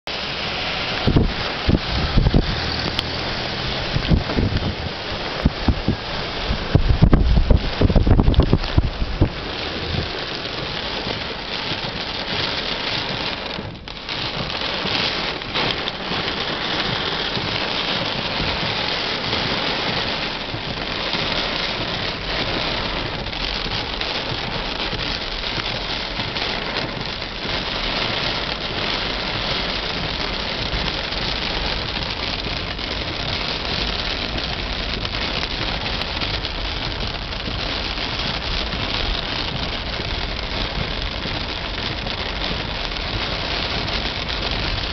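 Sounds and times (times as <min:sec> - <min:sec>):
heavy rain falling: 0:00.0 - 0:44.9.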